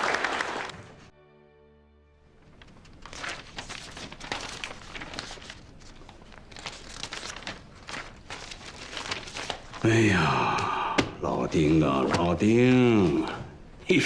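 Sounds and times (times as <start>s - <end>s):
rustling and crinkling: 2.3s - 9.9s, 11.3s - 13.6s.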